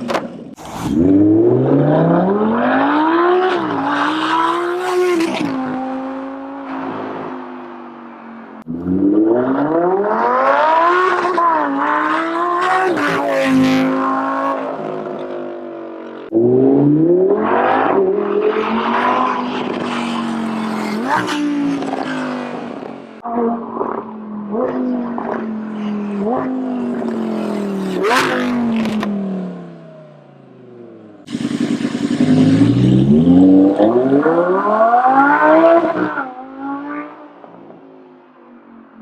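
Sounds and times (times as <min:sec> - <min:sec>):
sports car exhaust accelerating: 0:30.9 - 0:35.3.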